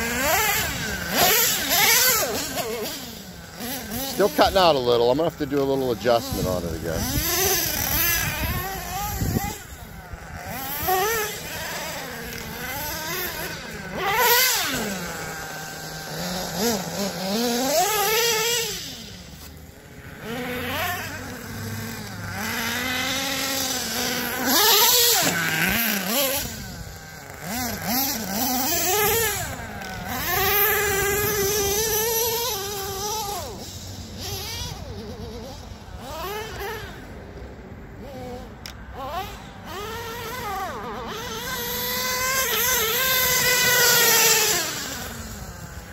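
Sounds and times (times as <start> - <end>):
rc truck engine revving: 0.0 - 45.9.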